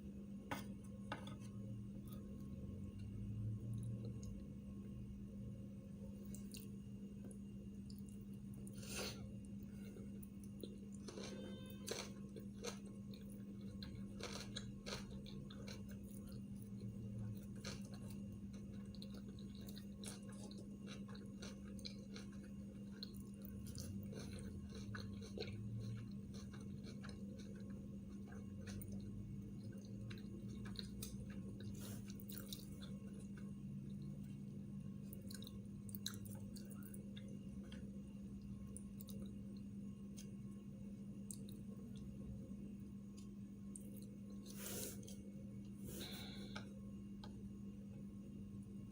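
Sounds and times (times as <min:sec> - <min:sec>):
person chewing: 0:06.2 - 0:06.8, 0:07.9 - 0:34.4, 0:35.0 - 0:37.9, 0:41.2 - 0:42.0, 0:43.2 - 0:46.7.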